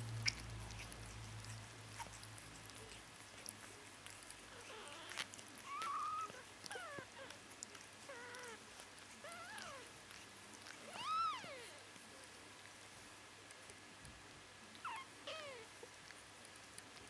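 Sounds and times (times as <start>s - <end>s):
kittens mewing: 4.4s - 7.4s, 10.8s - 11.8s, 14.8s - 15.9s.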